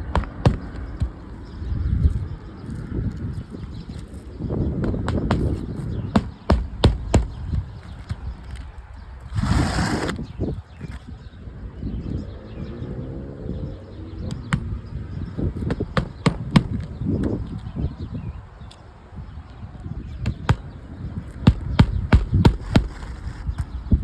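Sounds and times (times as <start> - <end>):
taps and knocks on roof shingles: 0.0 - 1.6, 3.5 - 8.8, 14.3 - 17.6, 20.2 - 24.0.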